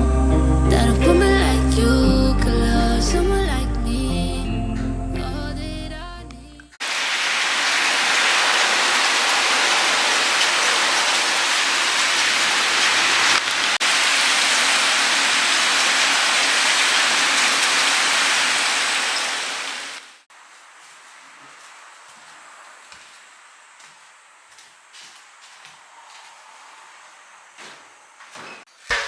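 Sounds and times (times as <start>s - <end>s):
falling water hiss: 6.8s - 20.3s.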